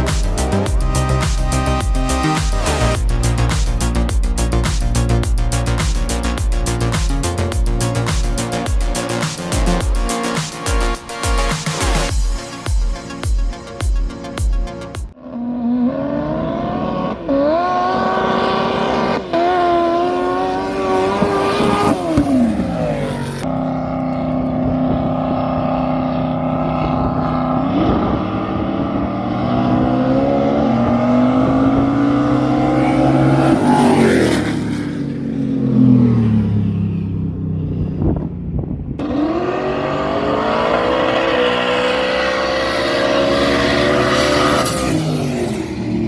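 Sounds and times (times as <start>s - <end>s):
drag car engine accelerating: 15.1s - 38.3s, 39.0s - 46.0s.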